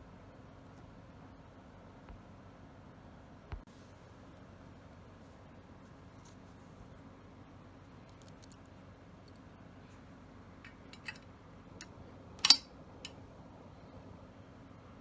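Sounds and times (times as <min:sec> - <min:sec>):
shotgun parts clicking: 0:10.7 - 0:11.3, 0:12.4 - 0:13.2.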